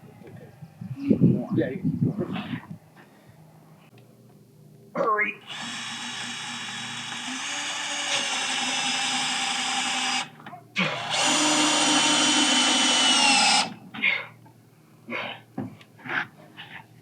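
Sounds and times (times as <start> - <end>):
power drill running: 5.4 - 13.8.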